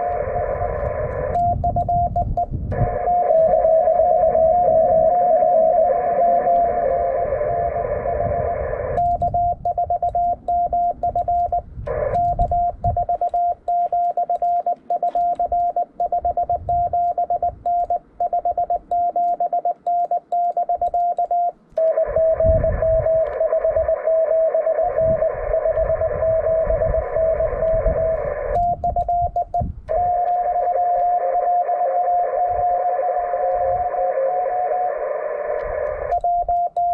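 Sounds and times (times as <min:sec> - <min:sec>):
radio band hiss: 0:00.0 - 0:01.7, 0:02.7 - 0:09.2, 0:11.4 - 0:13.9, 0:21.8 - 0:28.6, 0:29.9 - 0:36.2
morse code beeps: 0:00.0 - 0:07.0, 0:08.2 - 0:36.9.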